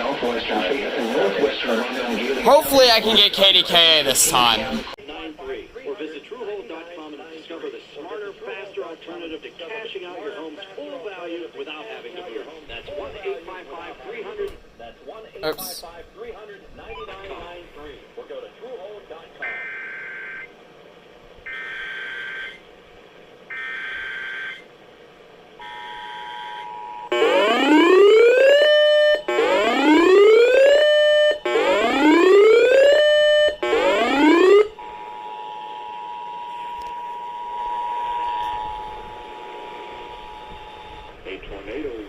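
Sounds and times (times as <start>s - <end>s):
broadcast audio: 0.0s - 19.9s, 27.1s - 42.0s
rising whoop alarm: 26.4s - 39.2s
two-tone attention signal: 33.2s - 39.4s.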